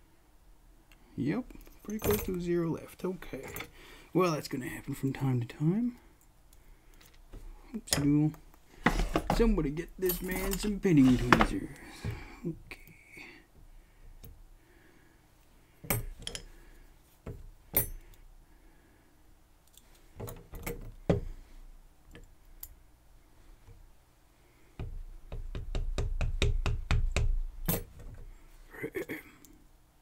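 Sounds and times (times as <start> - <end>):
handling knocks: 8.8 - 12.3.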